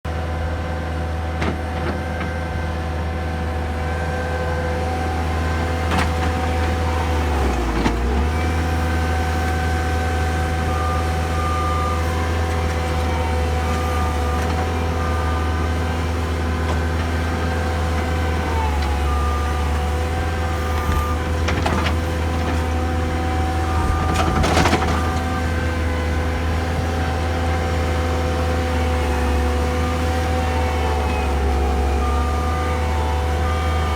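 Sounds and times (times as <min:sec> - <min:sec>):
loader engine running: 0:00.1 - 0:33.9.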